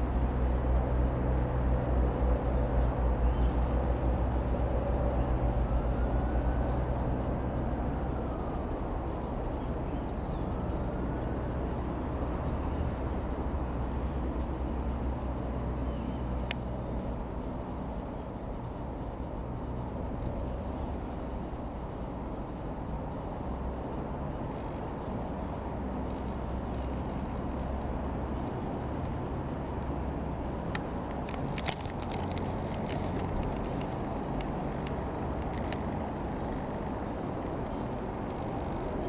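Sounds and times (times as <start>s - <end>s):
light aircraft engine droning: 0.0s - 39.0s.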